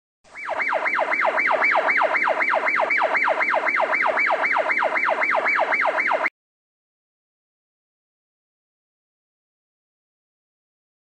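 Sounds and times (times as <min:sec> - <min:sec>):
siren yelping: 0:00.3 - 0:06.3.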